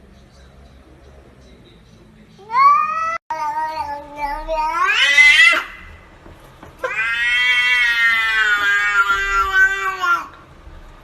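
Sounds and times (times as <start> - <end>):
cat yowling: 2.4 - 6.0, 6.8 - 10.4.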